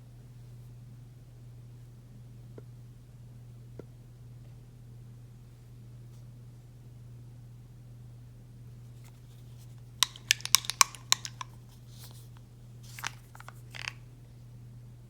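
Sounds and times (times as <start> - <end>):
soft rustles: 9.0 - 14.0
sharp clicks and taps: 10.0 - 12.2, 12.9 - 14.0.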